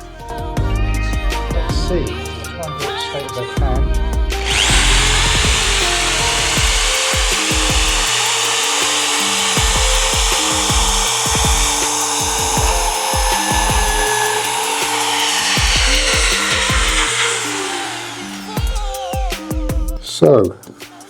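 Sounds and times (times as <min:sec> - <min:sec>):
power drill boring into plaster: 0:04.4 - 0:19.2.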